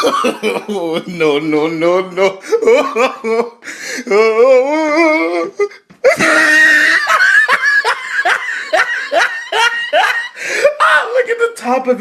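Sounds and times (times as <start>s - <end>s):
person laughing hard: 0.0s - 1.4s, 2.2s - 11.0s
wavering vocal sound: 4.0s - 6.3s.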